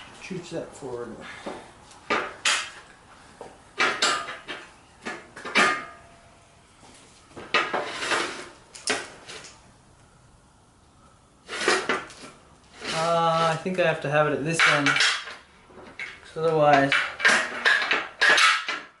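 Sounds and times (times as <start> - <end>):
metallic clanks and rattles: 3.8 - 6.1, 14.5 - 19.0
sharp metal knocks ringing: 14.5 - 15.4.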